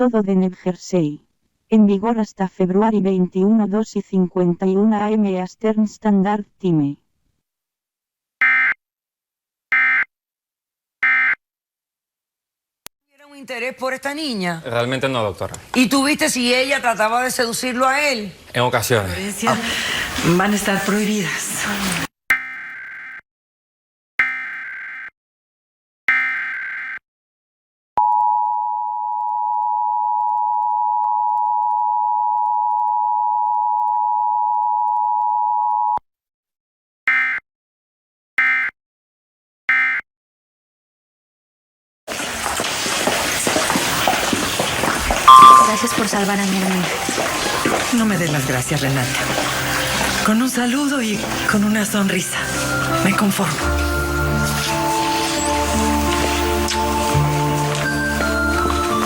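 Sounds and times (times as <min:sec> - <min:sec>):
two-tone attention signal: 0:45.3 - 0:46.2.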